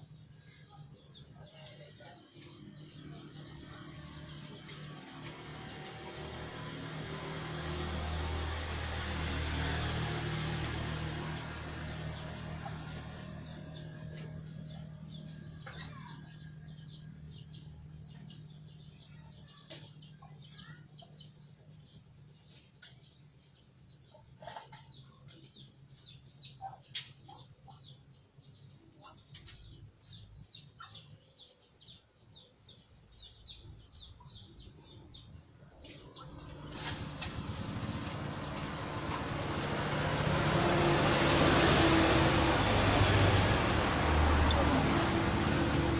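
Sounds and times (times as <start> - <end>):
small birds chirping: 0.0 - 45.9
motor vehicle passing: 2.4 - 19.3, 33.2 - 45.9.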